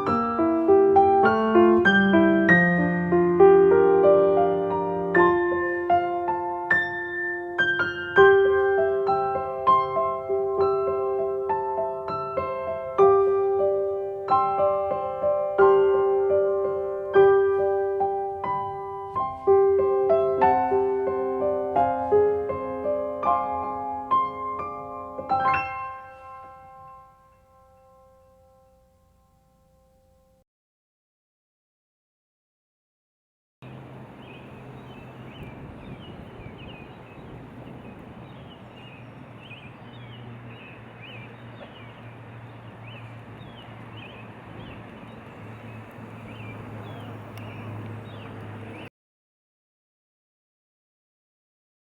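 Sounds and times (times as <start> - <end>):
slow piano melody: 0.0 - 30.4
small birds chirping: 33.6 - 48.9.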